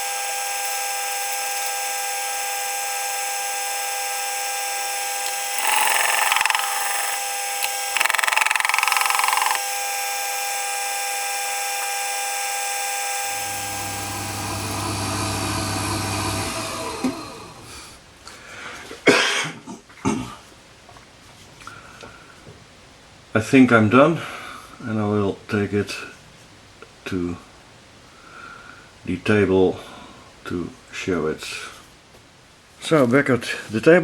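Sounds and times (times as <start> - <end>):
sharpening machine whine: 0.0 - 17.8.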